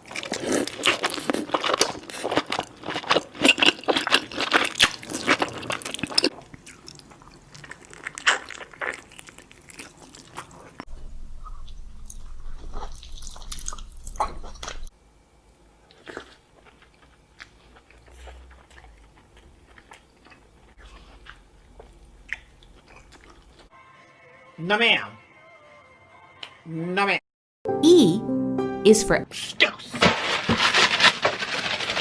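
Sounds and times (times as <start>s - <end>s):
chewing and crunching crisp food: 0.0s - 14.9s, 15.8s - 23.7s, 30.2s - 32.0s.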